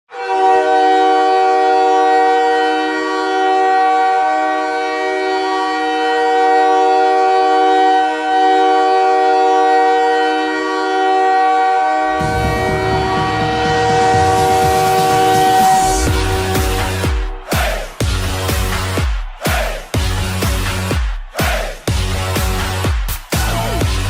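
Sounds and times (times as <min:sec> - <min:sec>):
arena goal horn chord: 0:00.1 - 0:24.0
bass beat of music: 0:12.2 - 0:24.0.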